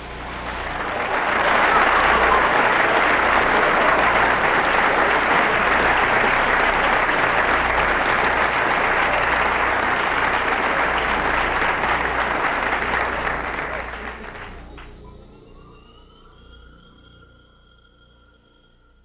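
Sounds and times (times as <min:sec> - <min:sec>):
audience applause: 0:00.0 - 0:15.2.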